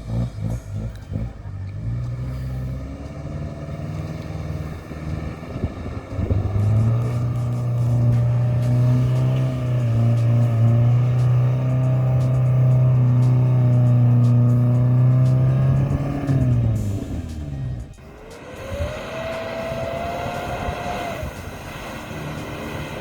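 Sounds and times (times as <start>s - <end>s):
car engine revving: 0.0s - 23.0s.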